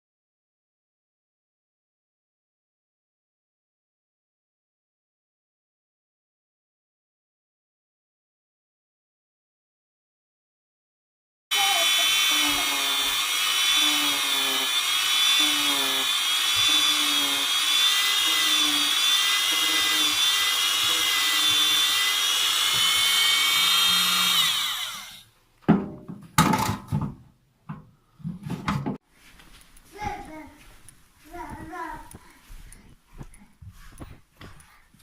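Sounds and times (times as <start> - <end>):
high-speed power tool running: 11.5 - 25.3.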